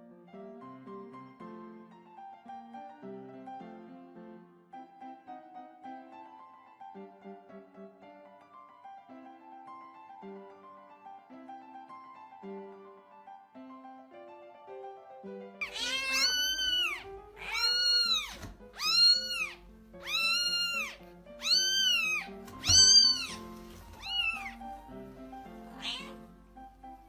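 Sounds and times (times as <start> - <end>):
background music: 0.0 - 27.0
cat meowing: 15.6 - 24.9, 25.5 - 26.2.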